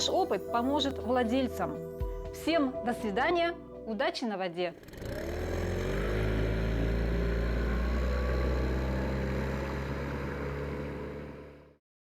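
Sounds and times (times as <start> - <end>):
outboard boat motor running: 4.8 - 11.8.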